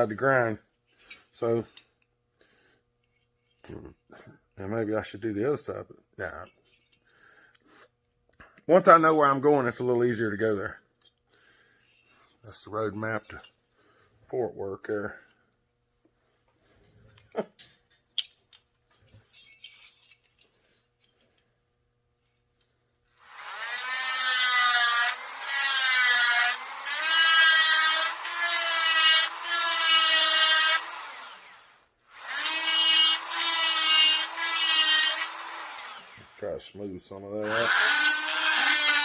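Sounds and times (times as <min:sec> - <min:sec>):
rotary grinder whining: 0:23.2 - 0:36.4, 0:37.4 - 0:39.0.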